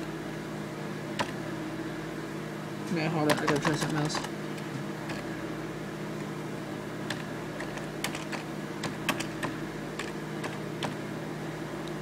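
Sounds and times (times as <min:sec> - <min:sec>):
laptop keyboard typing: 0:03.2 - 0:04.3, 0:05.1 - 0:05.3, 0:07.0 - 0:11.0.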